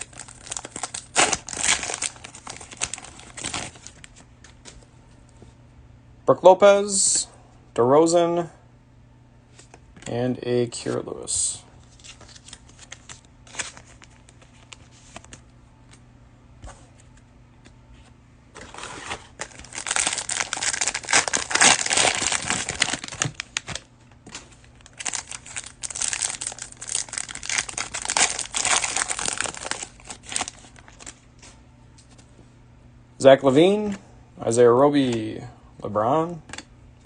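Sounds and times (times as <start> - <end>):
plastic wrapper crinkling: 0.0 - 4.2, 18.6 - 31.2.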